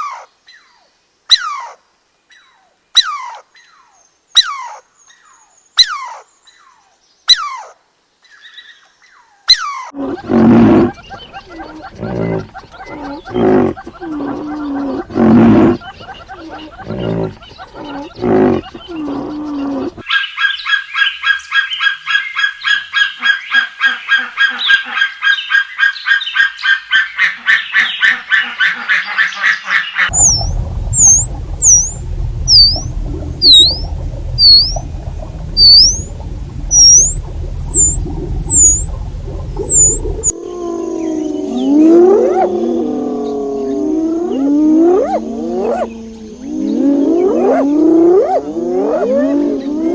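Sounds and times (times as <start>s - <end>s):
low deep animal calls: 10.0s - 20.0s, 30.1s - 49.9s
fast high pulsing trill: 30.1s - 40.3s.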